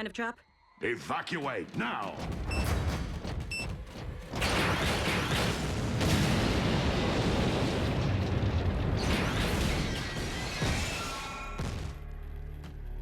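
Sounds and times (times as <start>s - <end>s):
explosion with rumble: 4.3s - 12.0s.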